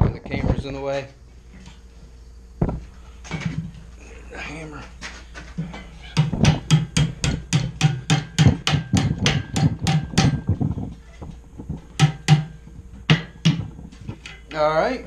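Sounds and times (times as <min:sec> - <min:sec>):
hammer striking hot steel: 0:06.2 - 0:10.6, 0:12.0 - 0:14.6.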